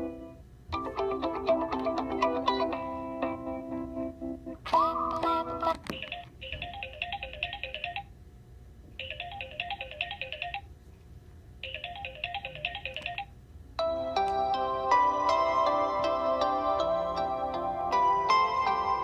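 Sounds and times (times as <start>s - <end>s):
phone ringtone trill: 5.9s - 8.1s, 9.0s - 10.7s, 11.6s - 19.0s
ringtone with sustained tones: 6.0s - 8.1s, 9.0s - 10.7s, 11.6s - 19.0s.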